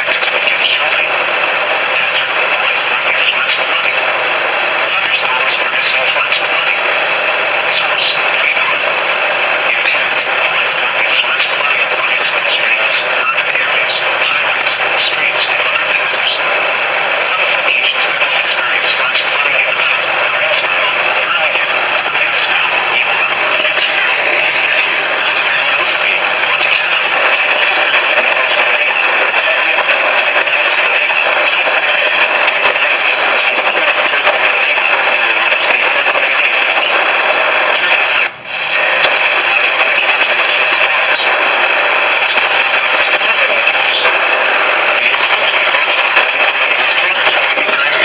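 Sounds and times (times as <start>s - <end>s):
radio static hiss: 0.0s - 48.0s.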